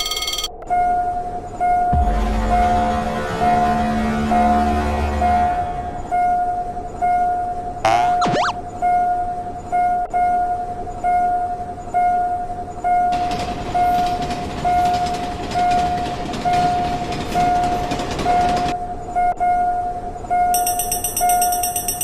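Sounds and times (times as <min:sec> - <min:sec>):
level crossing warning bell ringing: 0:00.0 - 0:00.5, 0:20.6 - 0:22.0
passing train rushing: 0:02.0 - 0:06.9, 0:13.2 - 0:19.0.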